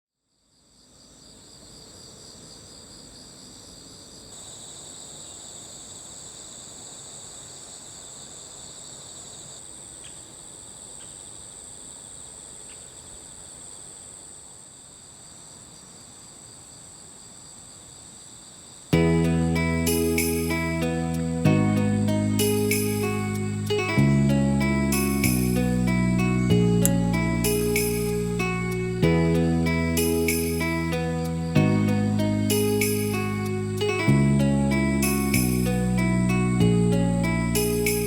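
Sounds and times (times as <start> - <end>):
crickets chirping: 0.2 - 21.3.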